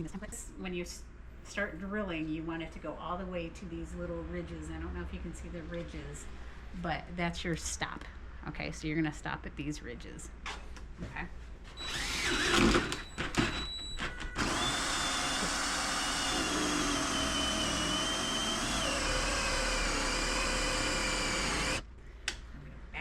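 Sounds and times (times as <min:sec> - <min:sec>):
drill boring into wood: 0:11.8 - 0:13.7, 0:14.4 - 0:21.8.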